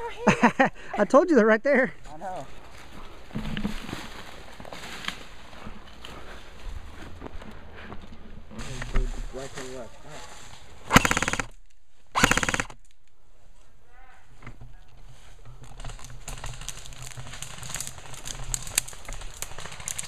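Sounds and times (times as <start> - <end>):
airsoft gun full-auto bursts: 10.9 - 11.5, 12.2 - 12.8
distant airsoft fire clicks: 10.9 - 11.6, 12.2 - 12.8.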